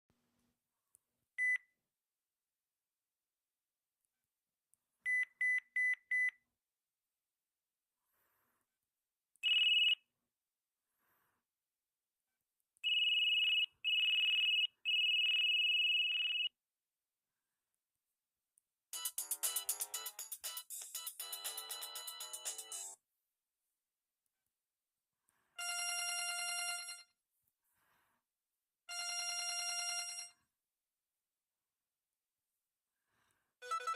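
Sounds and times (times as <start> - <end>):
cell phone beeps: 1.4 - 1.6, 33.6 - 33.9
phone ringtone trilling: 9.4 - 10.0, 12.9 - 16.5, 33.6 - 33.9.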